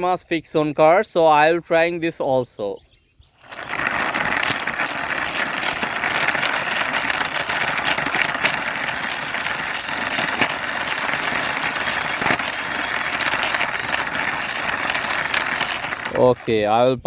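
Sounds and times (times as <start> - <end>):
toy car wheels rattling: 3.4 - 16.7.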